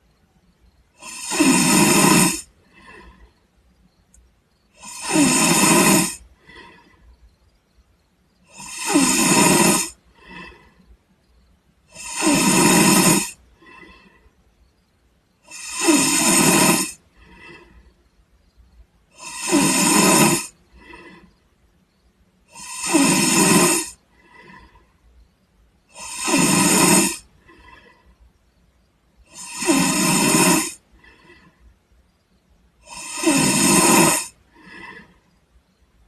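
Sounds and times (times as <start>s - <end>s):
person snoring: 1.0s - 3.3s, 4.7s - 7.0s, 8.4s - 10.8s, 11.9s - 14.2s, 15.4s - 17.8s, 19.1s - 21.3s, 22.5s - 24.9s, 25.9s - 28.1s, 29.3s - 31.6s, 32.8s - 35.3s
faint breath out: 2.4s - 5.2s, 6.2s - 9.0s, 9.8s - 11.5s, 13.3s - 14.9s, 17.0s - 18.8s, 20.5s - 22.1s, 23.9s - 25.6s, 27.2s - 28.5s, 30.8s - 32.1s, 34.3s - 35.9s.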